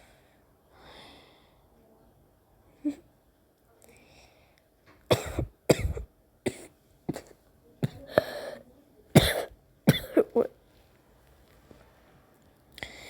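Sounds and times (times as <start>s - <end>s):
person coughing: 5.1s - 8.6s, 9.2s - 10.5s.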